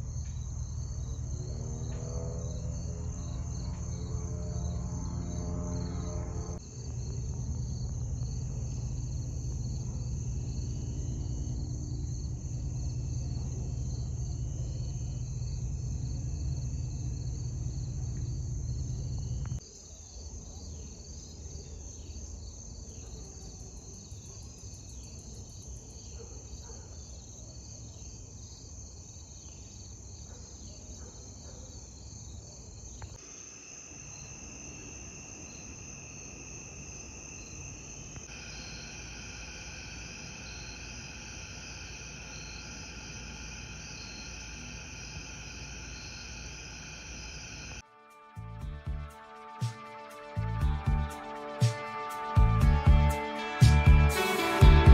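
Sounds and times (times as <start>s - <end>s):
low rumble: 0.0s - 19.6s
insects trilling: 0.0s - 47.8s.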